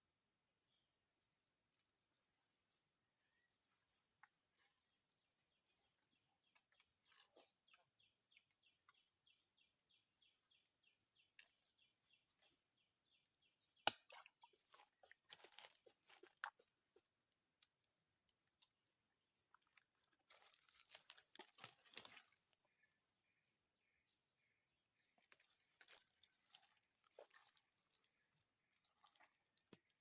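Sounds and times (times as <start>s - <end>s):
insect drone: 0.0s - 30.0s
small clicks and rustles: 20.3s - 22.3s.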